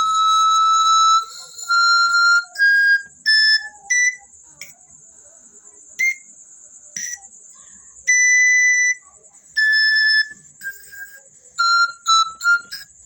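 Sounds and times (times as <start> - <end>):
pan flute notes: 0.0 - 4.8, 6.0 - 6.3, 7.0 - 7.2, 8.1 - 13.0.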